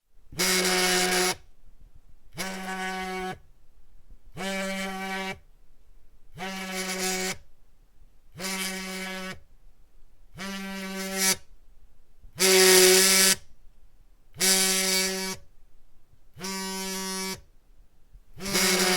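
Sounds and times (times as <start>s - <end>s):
phone vibrating buzz: 0.4s - 1.5s, 2.3s - 3.4s, 4.4s - 5.4s, 6.4s - 7.4s, 8.4s - 9.5s, 10.4s - 11.5s, 12.4s - 13.5s, 14.4s - 15.5s, 16.4s - 17.5s, 18.4s - 18.9s.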